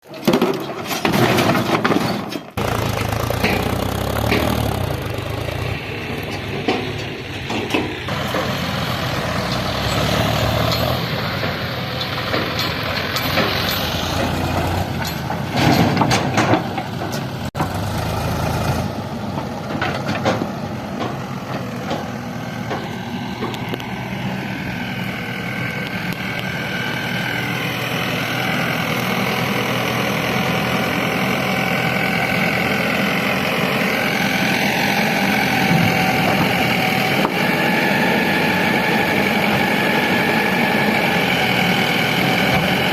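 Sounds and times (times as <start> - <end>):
diesel machinery engine: 0.0 - 42.9
loud clatter: 0.1 - 18.0.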